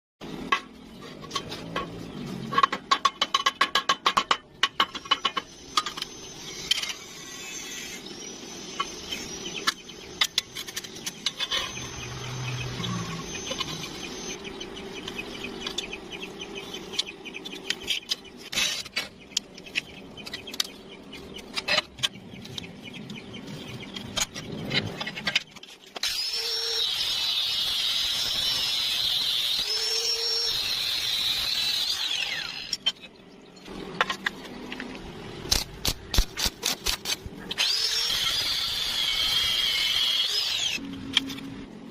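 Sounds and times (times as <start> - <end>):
power tool whine: 11.4 - 14.4, 26.0 - 32.8, 37.6 - 40.8
power tool running: 26.0 - 32.8, 37.6 - 40.8.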